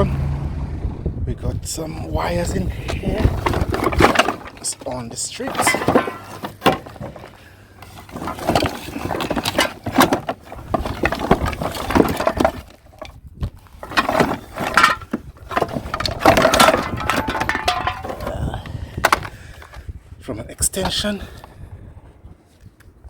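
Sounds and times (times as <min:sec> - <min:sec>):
junk clattering and clinking: 0:02.5 - 0:19.8.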